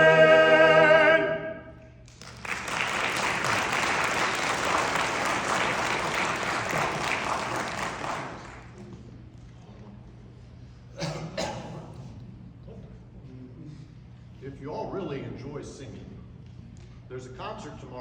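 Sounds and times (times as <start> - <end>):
choir holding chord: 0.0 - 1.8
audience applauding: 2.1 - 8.9.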